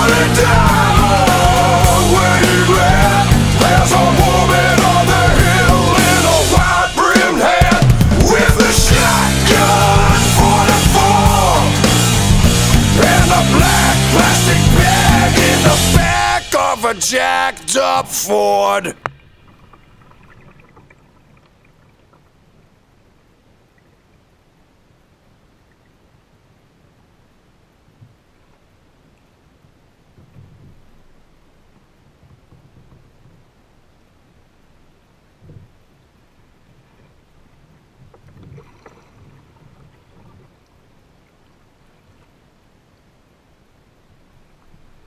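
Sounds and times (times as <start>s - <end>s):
water washing around kayak: 0.0s - 24.3s, 27.8s - 45.0s
water sloshing: 18.9s - 23.0s, 35.5s - 42.6s
paddle strokes: 27.9s - 42.7s.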